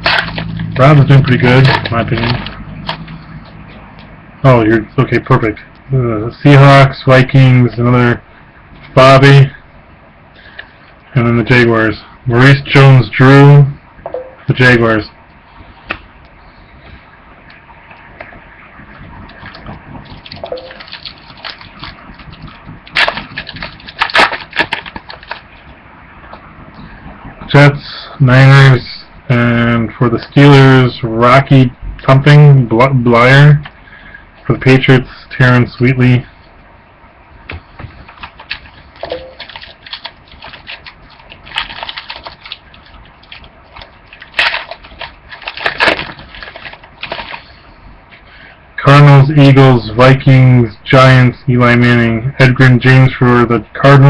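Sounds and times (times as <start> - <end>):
foil card pack crinkling: 0.0 - 3.2, 19.3 - 25.7, 38.0 - 47.6.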